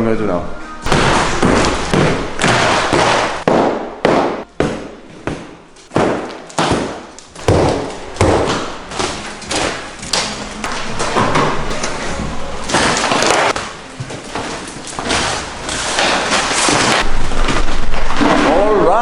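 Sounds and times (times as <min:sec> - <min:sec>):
debris breaking and falling: 0:12.6 - 0:19.0.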